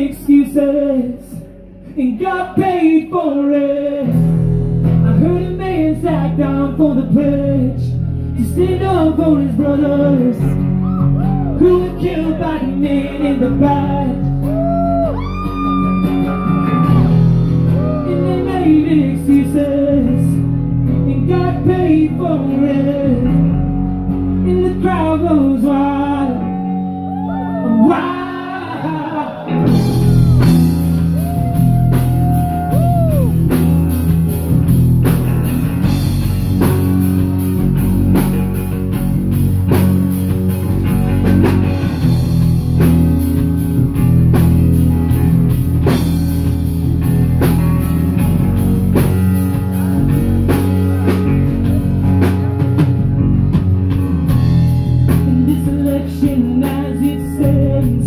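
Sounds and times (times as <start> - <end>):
bass line: 0.0 - 58.0
guitar: 0.0 - 58.0
drum kit beat: 29.5 - 58.0.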